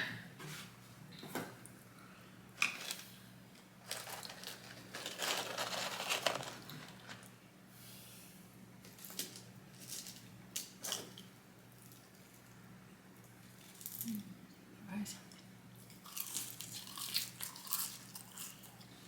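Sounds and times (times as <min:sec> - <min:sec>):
paper packaging crinkling: 0:03.8 - 0:07.4.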